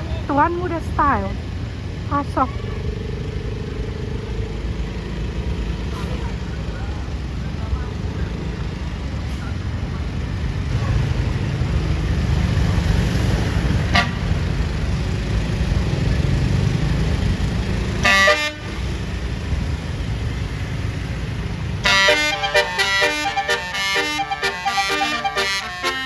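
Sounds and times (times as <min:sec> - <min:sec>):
bus engine rumbling: 0:00.0 - 0:26.0
horn blast: 0:13.9 - 0:14.3, 0:18.0 - 0:18.9, 0:21.8 - 0:26.0
horn playing fast tune: 0:21.8 - 0:26.0.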